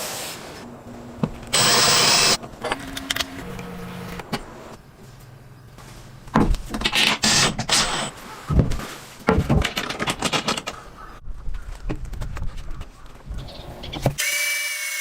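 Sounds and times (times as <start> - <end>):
power drill running: 1.5 - 2.4
wood and tools clattering: 6.3 - 11.0.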